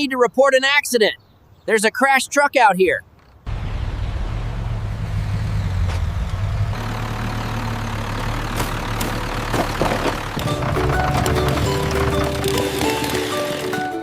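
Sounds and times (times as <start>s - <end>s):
vehicle engine idling: 3.5s - 14.0s.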